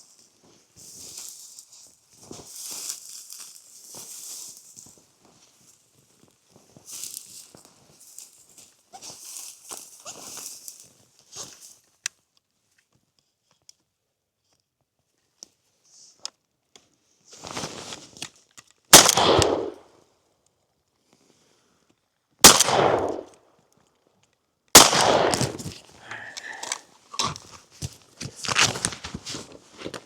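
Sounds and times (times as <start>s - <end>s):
soft rustle: 0.0s - 12.0s, 17.0s - 18.5s, 25.3s - 30.0s
shotgun blasts: 18.9s - 19.8s, 22.4s - 23.4s, 24.8s - 26.5s.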